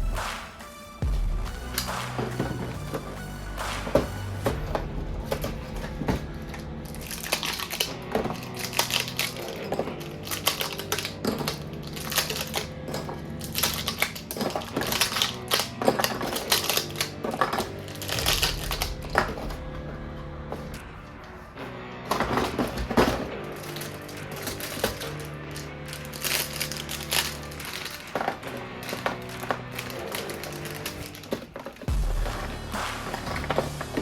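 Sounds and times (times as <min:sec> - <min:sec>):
background music: 0:00.0 - 0:34.0
packaging crackling: 0:03.8 - 0:21.4, 0:22.0 - 0:34.0
plastic toy parts clicking: 0:06.5 - 0:19.0.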